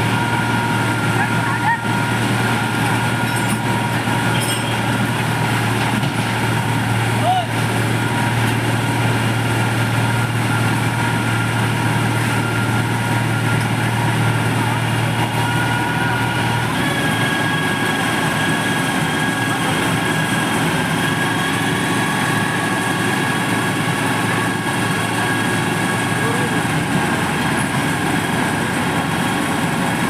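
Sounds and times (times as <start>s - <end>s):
paving machine engine whine: 0.0s - 30.0s.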